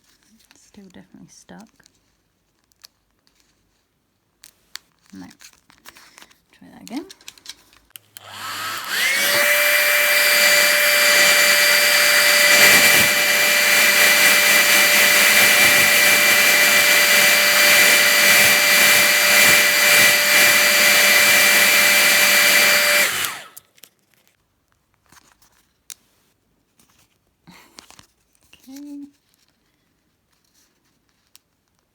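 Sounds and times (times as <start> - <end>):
hairdryer running: 8.1 - 23.6.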